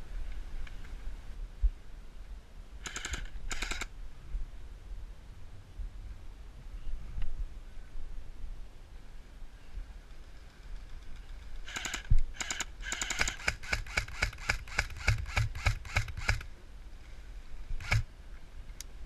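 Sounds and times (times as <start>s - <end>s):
airsoft rifle rapid shots: 2.8s - 3.9s, 11.6s - 16.5s, 17.8s - 18.1s.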